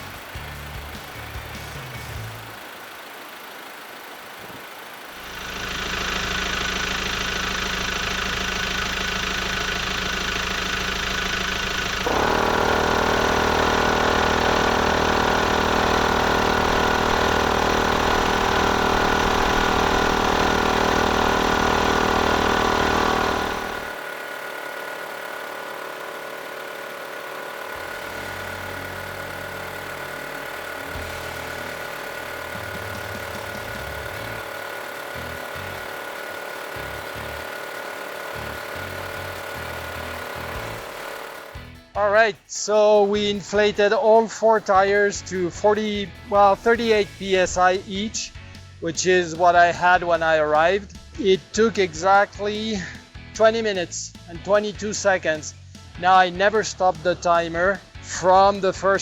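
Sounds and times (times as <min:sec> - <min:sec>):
air compressor running: 0:00.0 - 0:42.0.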